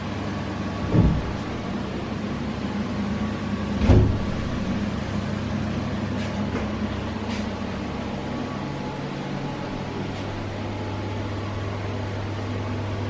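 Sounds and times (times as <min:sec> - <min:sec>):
low mechanical hum: 0:00.0 - 0:13.0
thump: 0:00.8 - 0:01.4, 0:03.8 - 0:04.4.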